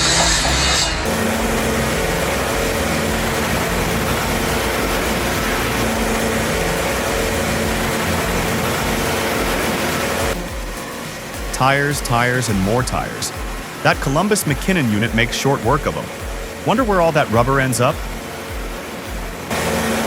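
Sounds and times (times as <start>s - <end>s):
high hiss: 0.0s - 20.0s
industrial shredder running: 0.0s - 20.0s.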